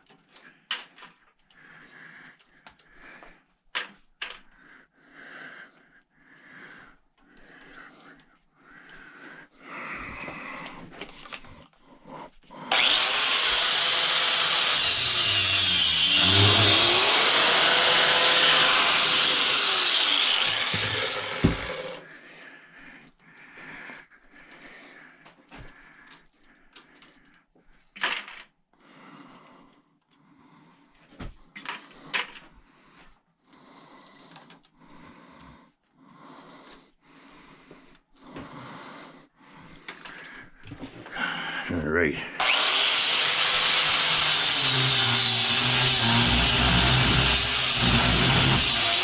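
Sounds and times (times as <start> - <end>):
power saw cutting: 12.7 - 22.0, 42.4 - 49.0.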